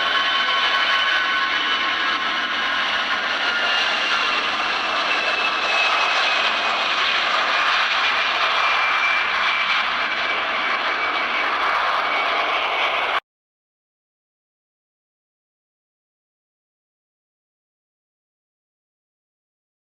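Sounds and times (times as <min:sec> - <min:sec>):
airplane engines roaring: 0:00.0 - 0:13.2.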